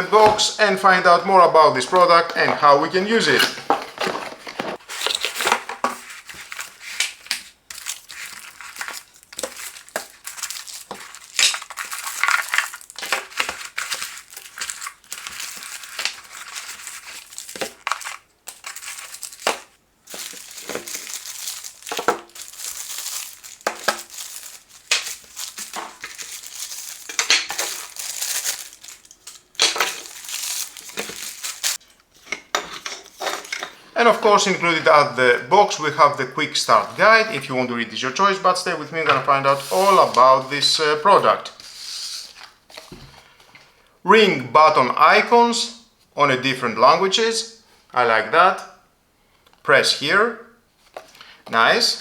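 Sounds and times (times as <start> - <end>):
packaging crinkling: 1.6 - 31.8.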